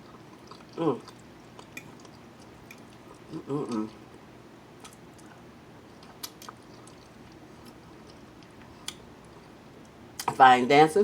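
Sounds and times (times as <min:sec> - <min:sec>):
person chewing food: 0:00.0 - 0:10.3
wet mouth clicks: 0:06.0 - 0:07.1.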